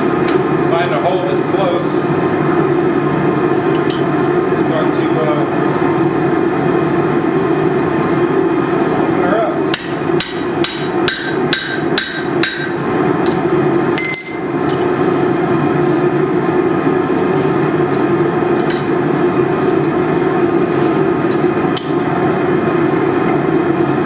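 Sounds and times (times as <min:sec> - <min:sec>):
steady background noise: 0:00.0 - 0:24.0
hammer ringing on anvil: 0:09.7 - 0:13.4, 0:14.0 - 0:14.8.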